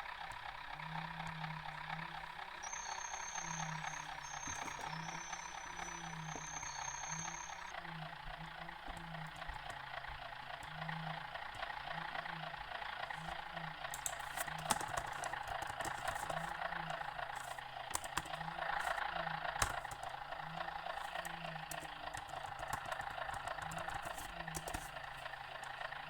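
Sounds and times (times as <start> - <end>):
bus engine humming: 0.0 - 26.0
bus body clicks and rattles: 13.2 - 26.0.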